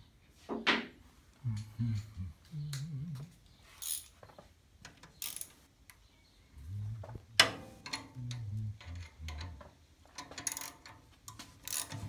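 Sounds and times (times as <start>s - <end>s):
low murmur: 6.5s - 9.8s
metal tools clinking and scraping: 7.4s - 12.0s.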